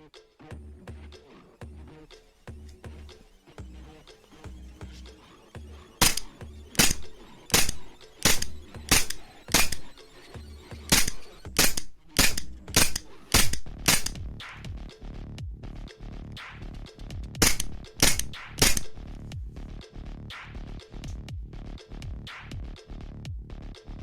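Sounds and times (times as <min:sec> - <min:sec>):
airsoft pistol shots: 0:06.0 - 0:10.0, 0:10.9 - 0:14.2, 0:17.4 - 0:19.1.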